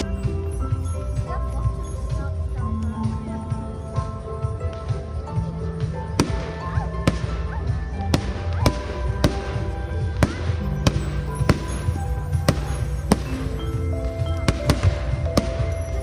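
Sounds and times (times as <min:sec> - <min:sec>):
fireworks bangs: 0:08.1 - 0:16.0.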